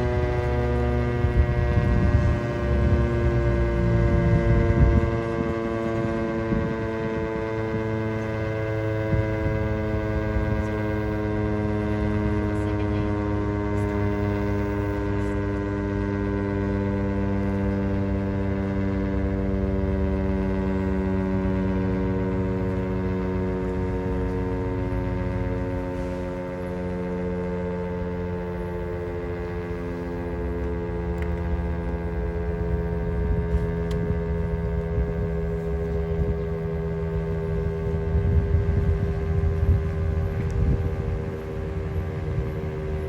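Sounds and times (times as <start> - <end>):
low rumble: 0.0 - 6.7, 28.5 - 43.0
tornado siren steady tone: 0.0 - 43.0.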